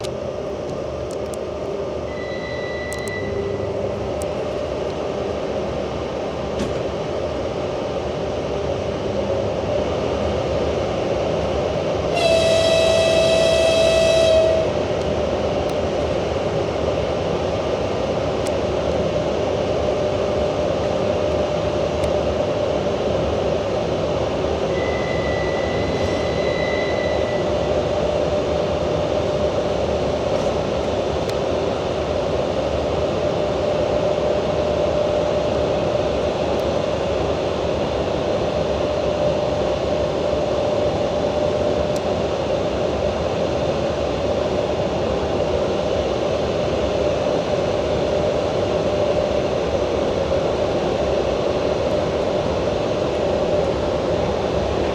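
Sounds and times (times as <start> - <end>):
train horn: 2.1 - 3.8, 12.1 - 15.0.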